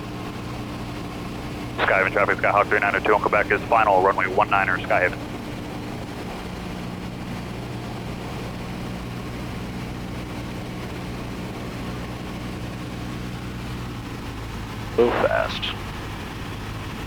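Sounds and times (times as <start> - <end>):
aircraft engine droning: 0.0 - 17.0.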